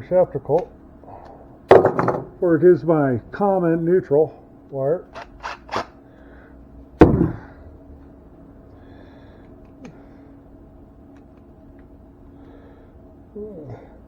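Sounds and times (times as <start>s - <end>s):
loud knock with ringing tail: 1.7s - 2.4s, 7.0s - 7.5s.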